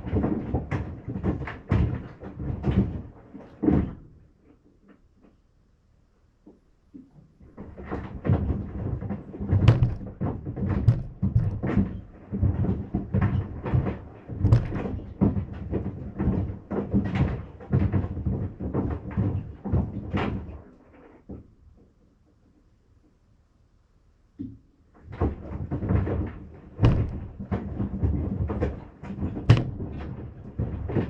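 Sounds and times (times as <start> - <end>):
sandals thudding in washing machine: 7.5 - 20.2, 25.1 - 31.0.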